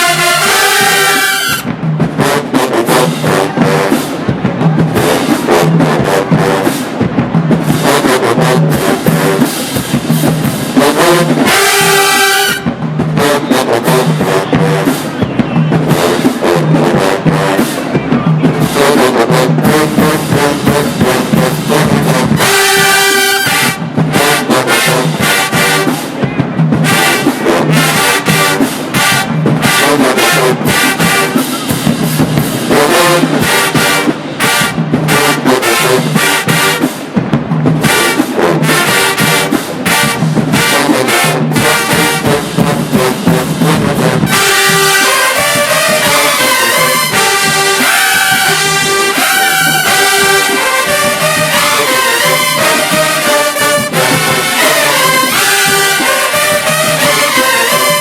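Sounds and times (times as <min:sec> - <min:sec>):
marching band playing: 0:00.0 - 0:58.0
low drum beat: 0:01.6 - 0:47.7
loud sustained brass chords: 0:18.6 - 0:26.0, 0:43.9 - 0:58.0.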